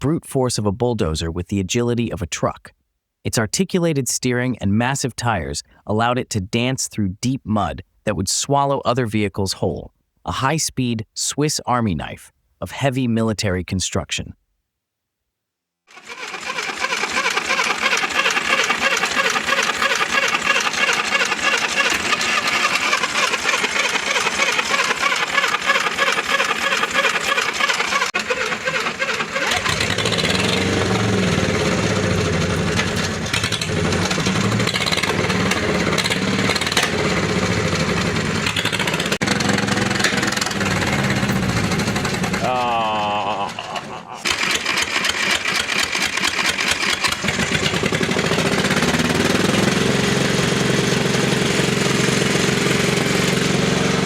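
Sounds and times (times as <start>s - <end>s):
high-pitched mechanical clatter: 15.9s - 42.4s, 44.3s - 54.0s.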